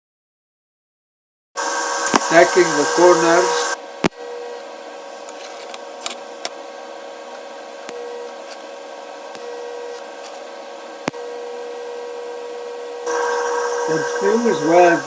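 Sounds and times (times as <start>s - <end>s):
faint hiss: 1.6s - 3.8s
machine hum: 1.6s - 15.0s.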